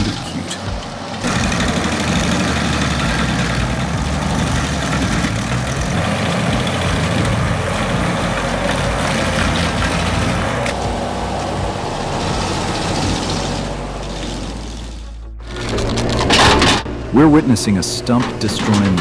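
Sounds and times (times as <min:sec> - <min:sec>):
heavy machine engine running: 0:00.0 - 0:19.0
mechanical noise: 0:15.4 - 0:19.0.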